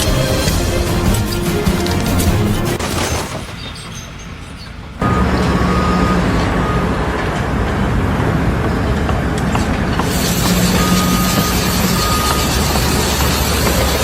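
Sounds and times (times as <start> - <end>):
steady engine noise: 4.4 - 14.0.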